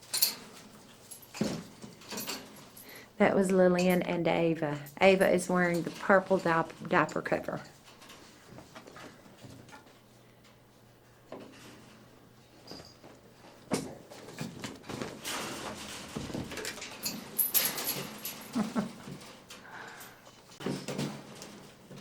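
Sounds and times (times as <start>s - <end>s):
monkeys scuffling: 11.5s - 22.0s.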